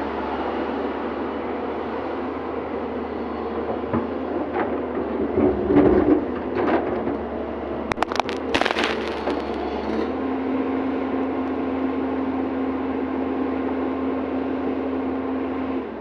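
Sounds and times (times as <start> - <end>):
rough scraping and knocks: 7.9 - 9.9.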